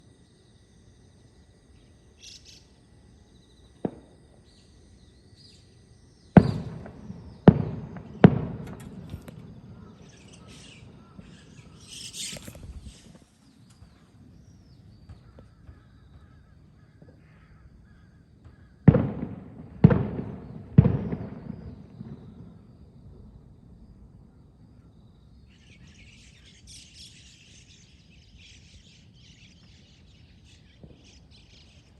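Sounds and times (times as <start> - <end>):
birds calling harshly: 2.1 - 2.7, 5.4 - 18.8, 25.5 - 31.9
loud echoing bangs: 6.4 - 13.0, 18.8 - 22.8.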